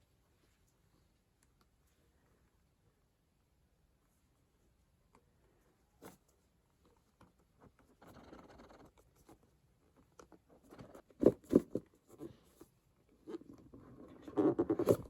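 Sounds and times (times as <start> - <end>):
rustling scrape: 13.9 - 15.0.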